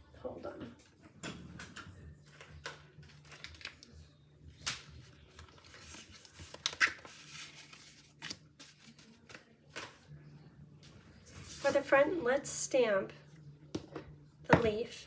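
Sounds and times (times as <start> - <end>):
paper rustling: 4.6 - 10.0.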